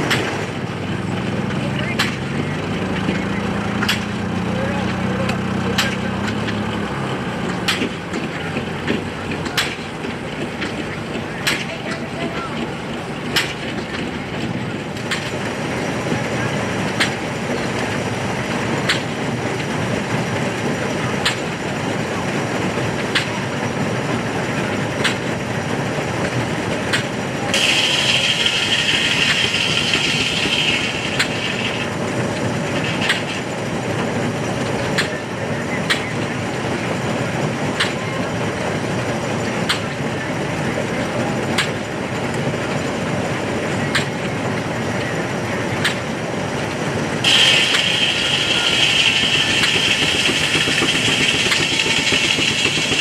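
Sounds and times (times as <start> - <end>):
sawmill machinery running: 0.0 - 53.0.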